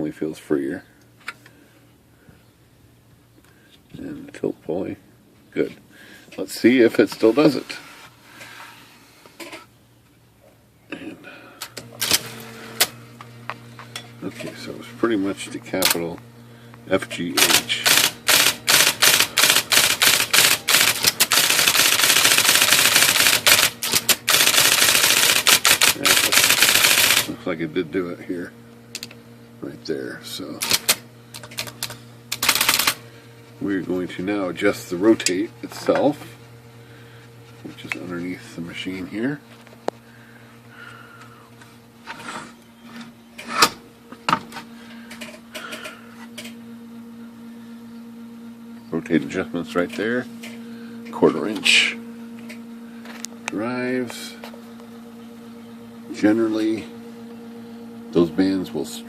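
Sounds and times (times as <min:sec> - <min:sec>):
steady low hum: 0:00.0 - 0:59.0
electric typewriter typing: 0:11.9 - 0:13.0, 0:15.7 - 0:16.2, 0:17.0 - 0:27.4, 0:30.5 - 0:33.0.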